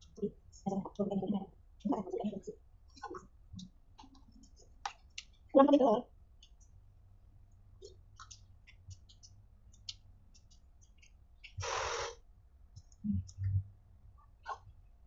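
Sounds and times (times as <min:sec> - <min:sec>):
wet mouth chewing clicks: 0:07.8 - 0:11.6
soft low thumps: 0:12.8 - 0:13.8.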